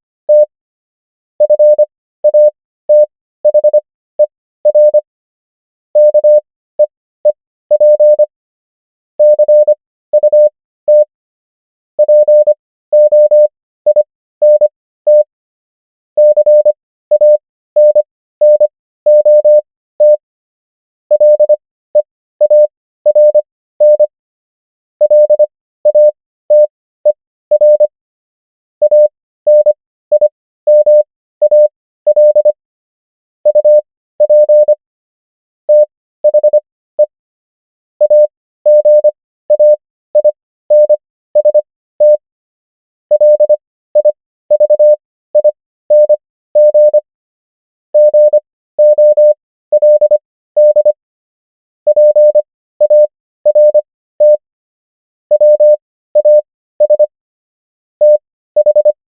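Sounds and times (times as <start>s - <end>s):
morse code beeps: 0.3s - 0.5s, 1.4s - 5.0s, 6.0s - 6.9s, 7.7s - 8.3s, 9.2s - 11.1s, 12.0s - 15.3s, 16.2s - 20.2s, 21.1s - 24.1s, 25.0s - 27.9s, 28.8s - 32.6s, 33.5s - 34.8s, 35.7s - 37.1s, 38.0s - 42.2s, 43.1s - 47.0s, 48.0s - 51.0s, 51.9s - 54.5s, 55.3s - 57.1s, 58.0s - 59.0s.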